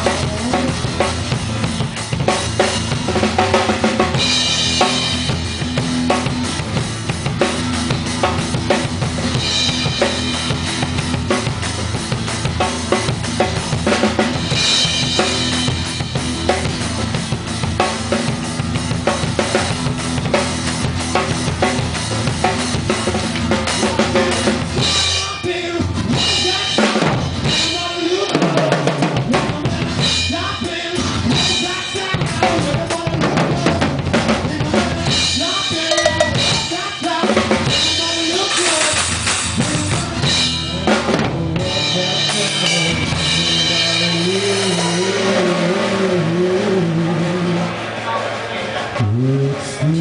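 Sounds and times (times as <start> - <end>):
bass and guitar: 0.0 - 50.0
drum kit playing: 0.0 - 50.0.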